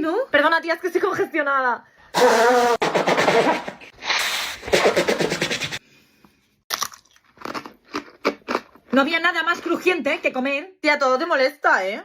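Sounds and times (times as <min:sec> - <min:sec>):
crunchy food being chewed: 0:06.7 - 0:08.9.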